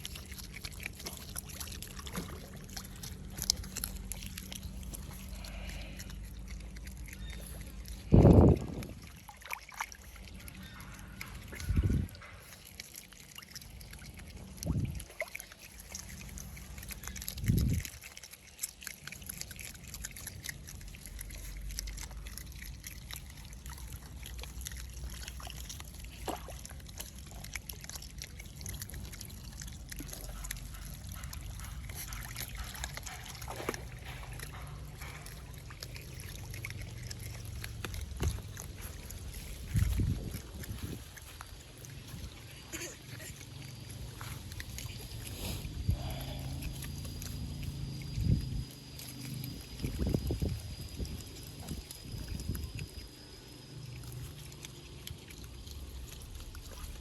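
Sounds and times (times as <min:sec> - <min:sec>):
water trickling and sloshing: 0:00.0 - 0:57.0.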